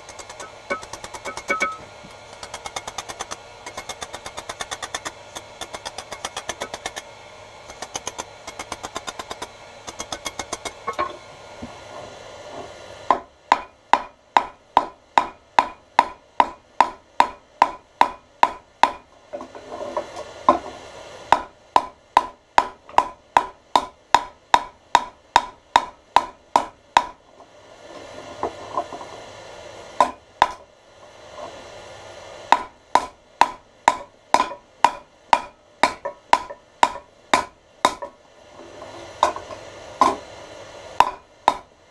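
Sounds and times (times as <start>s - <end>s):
hammer striking iron on anvil: 0.0s - 7.0s, 7.7s - 11.2s, 13.1s - 19.1s, 21.3s - 27.2s, 30.0s - 30.6s, 32.5s - 38.2s, 41.0s - 41.7s.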